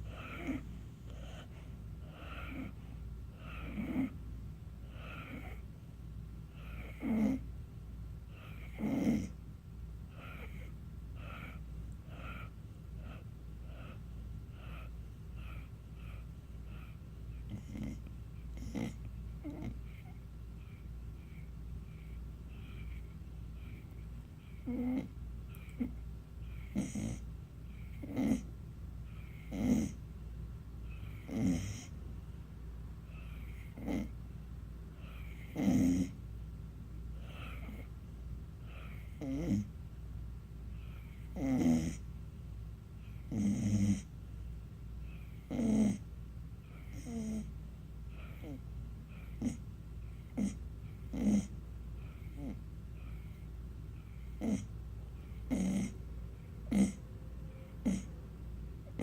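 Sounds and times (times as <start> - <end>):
rasping snores: 0.0 - 2.8, 3.4 - 4.2, 4.9 - 5.6, 6.6 - 7.4, 8.4 - 9.4, 17.5 - 18.0, 18.6 - 20.1, 24.5 - 25.9, 26.5 - 27.2, 27.8 - 28.5, 29.2 - 30.0, 31.0 - 31.9, 33.2 - 34.1, 35.0 - 36.2, 38.7 - 39.7, 40.9 - 42.0, 43.2 - 44.1, 45.4 - 46.0, 46.8 - 47.5, 49.2 - 49.6, 50.3 - 53.2, 54.2 - 54.7, 55.4 - 56.0, 56.6 - 57.0, 57.8 - 58.1
person snoring: 56.6 - 57.0, 57.8 - 58.1.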